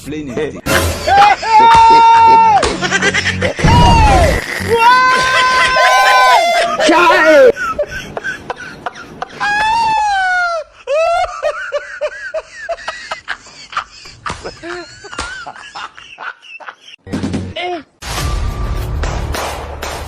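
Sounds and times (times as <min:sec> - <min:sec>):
person screaming: 0:01.1 - 0:02.6, 0:03.6 - 0:07.5.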